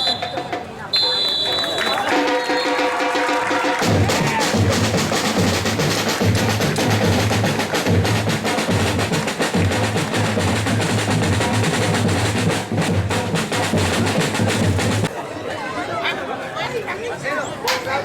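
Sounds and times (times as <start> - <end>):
fast dense drumming: 2.1 - 15.1.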